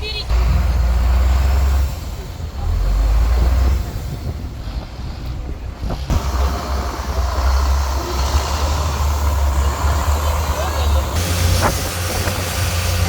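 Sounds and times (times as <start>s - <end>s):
boat engine droning: 0.0s - 13.0s
wind on microphone: 1.8s - 10.0s, 11.0s - 13.0s.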